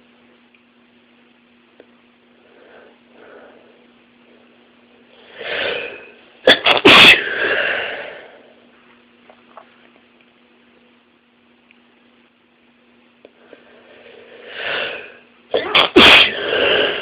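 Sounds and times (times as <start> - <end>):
loud sneeze: 6.4 - 7.8, 15.0 - 17.0.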